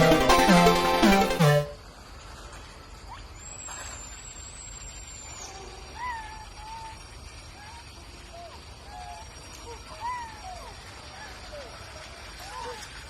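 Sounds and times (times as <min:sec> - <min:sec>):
music: 0:00.0 - 0:01.8.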